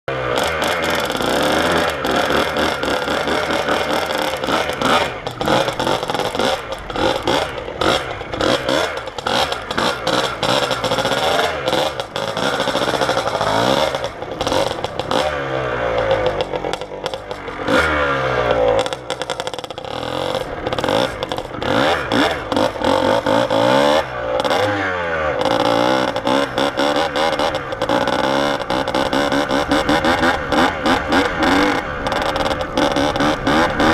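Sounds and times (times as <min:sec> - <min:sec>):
dirt bike engine revving: 0:00.1 - 0:33.9
knocks and clatters: 0:00.4 - 0:15.4, 0:16.0 - 0:17.8.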